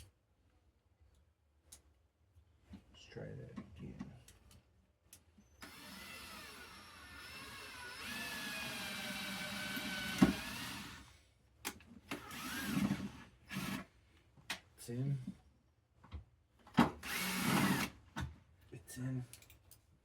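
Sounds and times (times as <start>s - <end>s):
power drill motor whine: 5.6s - 11.1s, 12.2s - 13.8s, 17.0s - 18.0s.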